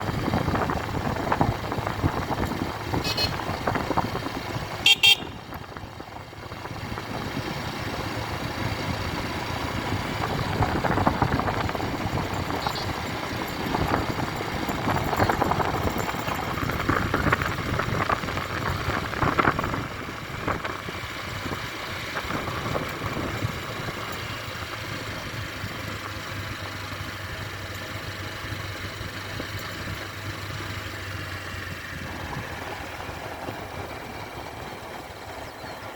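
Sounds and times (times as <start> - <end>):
wind noise: 0.0 - 26.0, 31.6 - 35.2
motorcycle engine running: 0.0 - 35.9
short high horn toots: 3.0 - 3.4, 4.8 - 5.4.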